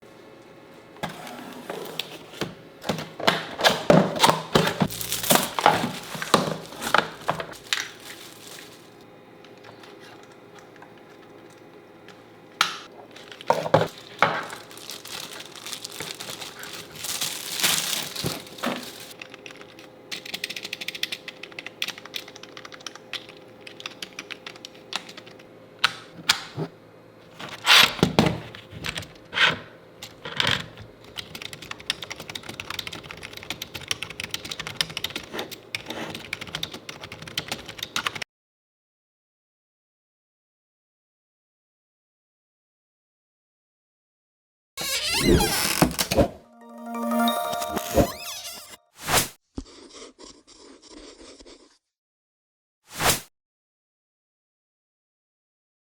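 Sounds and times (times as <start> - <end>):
plastic crinkling and tearing: 4.8 - 9.0, 13.1 - 19.2.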